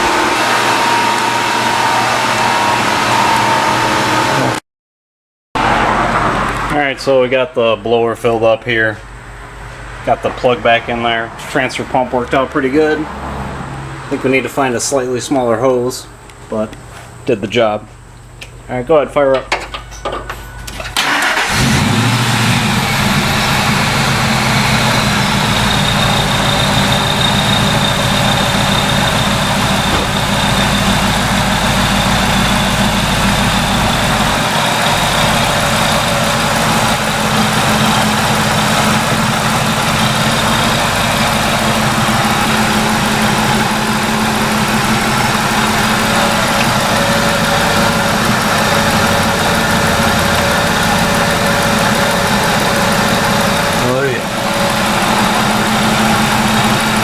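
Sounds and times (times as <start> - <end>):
truck engine idling: 20.4 - 57.0.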